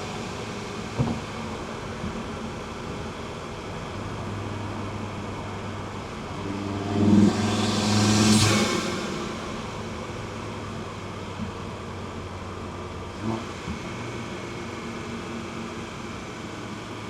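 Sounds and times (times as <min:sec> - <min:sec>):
car engine droning: 0:00.0 - 0:17.0.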